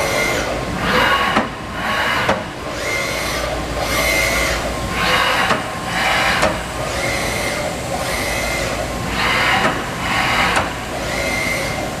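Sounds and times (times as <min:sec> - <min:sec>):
machine hissing strokes: 0:00.0 - 0:12.0
steady high machine whine: 0:00.0 - 0:12.0.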